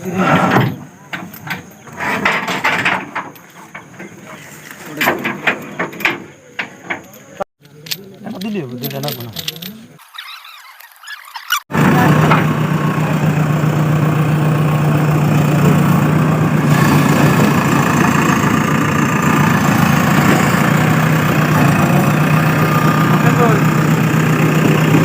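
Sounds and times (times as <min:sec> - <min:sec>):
diesel engine idling: 0:11.7 - 0:25.0.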